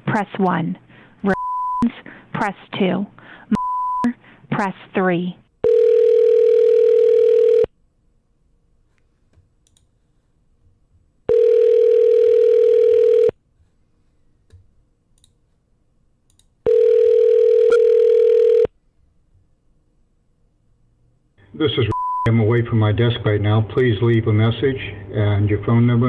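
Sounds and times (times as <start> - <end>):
telephone ringback tone: 5.6 - 7.7, 11.3 - 13.3, 16.7 - 18.7.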